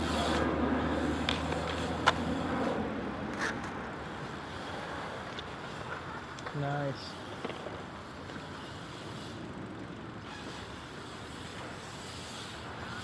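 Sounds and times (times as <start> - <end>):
bike tyres rolling on concrete: 0.0 - 13.0.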